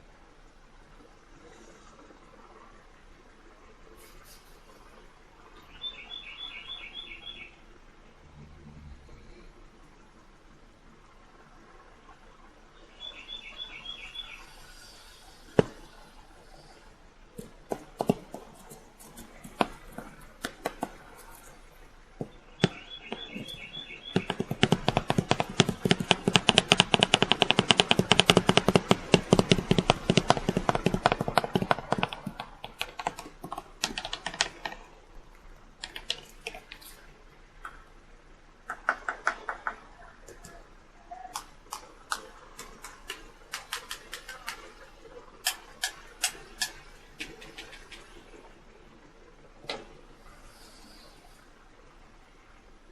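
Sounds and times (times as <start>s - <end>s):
sharp clicks and taps: 17.4s - 21.5s, 22.2s - 34.8s, 35.8s - 36.9s, 41.4s - 44.7s.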